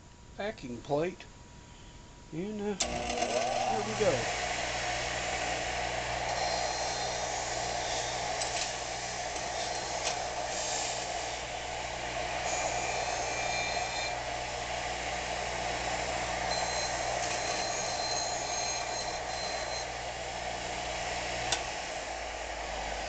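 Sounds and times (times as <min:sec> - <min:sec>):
power wire brush scouring metal: 0:02.8 - 0:19.8
high squealing tones: 0:06.3 - 0:08.6, 0:12.4 - 0:14.2, 0:16.5 - 0:19.9.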